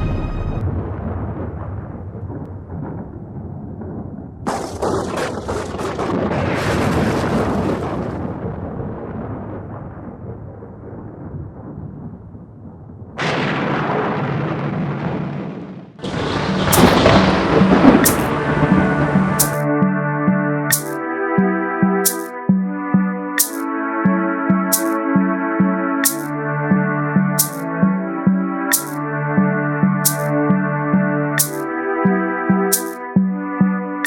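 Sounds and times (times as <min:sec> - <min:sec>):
film music: 0:00.0 - 0:00.8, 0:16.0 - 0:34.0
sudden loud hits: 0:00.0 - 0:01.8, 0:16.3 - 0:18.4
deep rumbling booms: 0:00.0 - 0:19.4.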